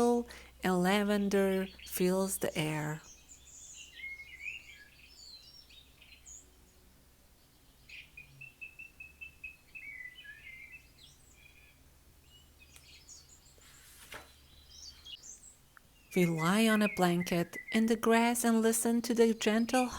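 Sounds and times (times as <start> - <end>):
bird trill: 2.9 - 6.5, 7.8 - 13.6, 14.4 - 19.9
faint bird chirps: 2.9 - 6.8, 7.4 - 18.1.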